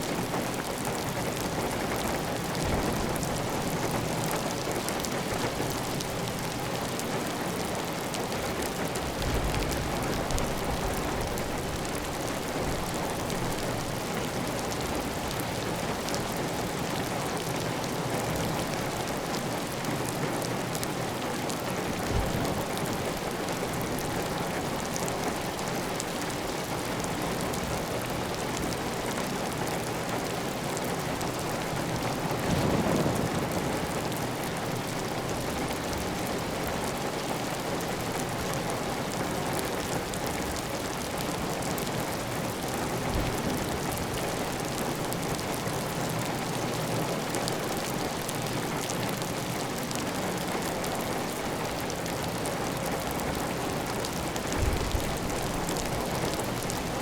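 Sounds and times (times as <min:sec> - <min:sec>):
heavy rain on a tile roof: 0:00.0 - 0:57.0.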